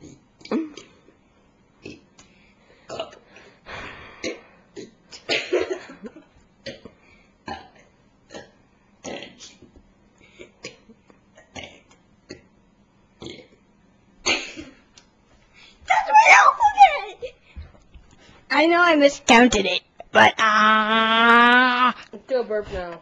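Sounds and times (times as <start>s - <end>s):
person burping: 20.0s - 22.1s.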